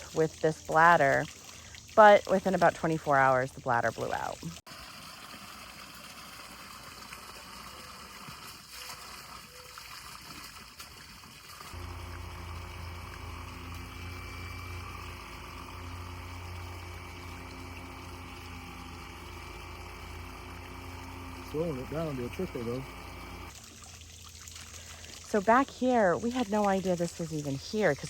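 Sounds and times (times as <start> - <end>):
water running from drainage pipe: 0.0 - 28.0
steady low hum: 11.8 - 23.5.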